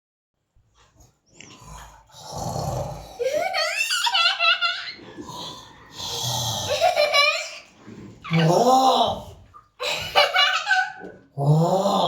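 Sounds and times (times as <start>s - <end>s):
high-pitched laughter: 3.2s - 5.0s, 9.8s - 11.2s.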